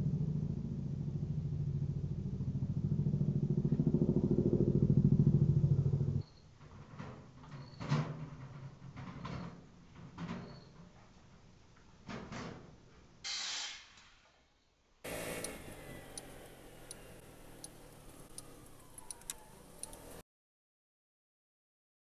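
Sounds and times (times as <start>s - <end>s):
car engine running: 0.0s - 6.2s, 15.1s - 20.2s
faint shifting whine: 0.0s - 6.5s, 15.1s - 20.2s
light clicks: 15.1s - 20.2s.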